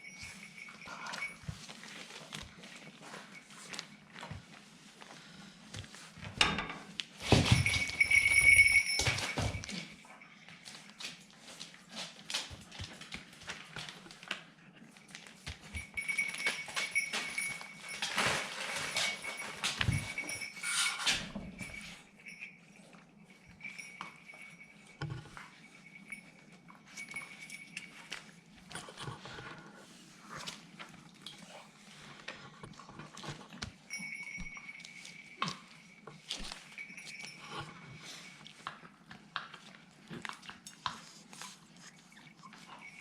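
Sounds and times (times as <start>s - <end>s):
puppies scuffling: 10.6s - 43.0s.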